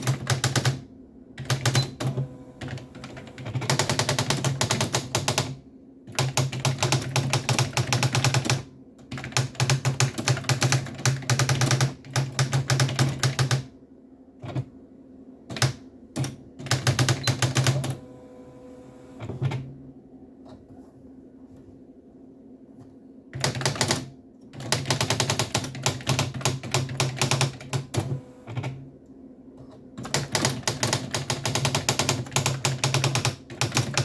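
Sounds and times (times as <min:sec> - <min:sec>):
soft steady whir: 0:17.6 - 0:23.3.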